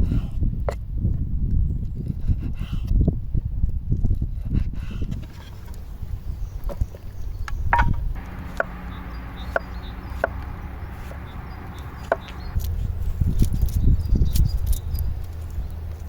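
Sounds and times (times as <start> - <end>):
sharp knocks: 7.7 - 12.6
steady low rumble: 7.7 - 16.0.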